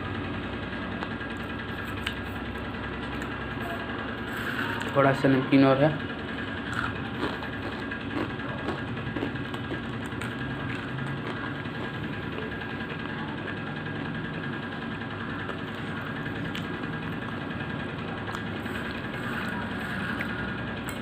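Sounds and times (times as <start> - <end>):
low motor hum: 0.0 - 21.0.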